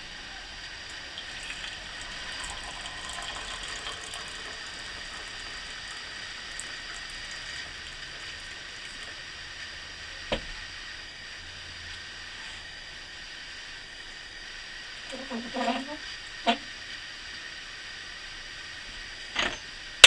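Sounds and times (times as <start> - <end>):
coffee pouring into a cup: 0.8 - 9.8.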